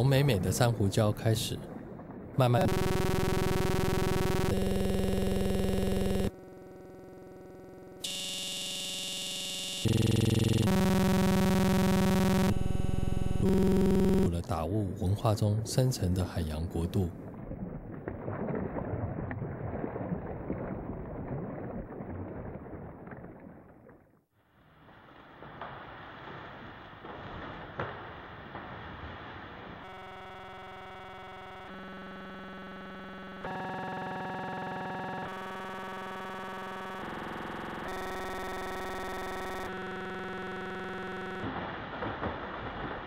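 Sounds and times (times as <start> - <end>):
sustained synthesizer chords: 2.6 - 14.3, 29.9 - 41.5.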